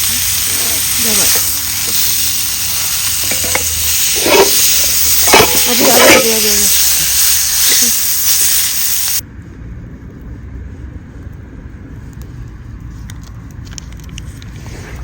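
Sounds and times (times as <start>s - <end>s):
faint crackles: 0.0s - 9.2s
loud frying sizzle: 0.0s - 9.2s.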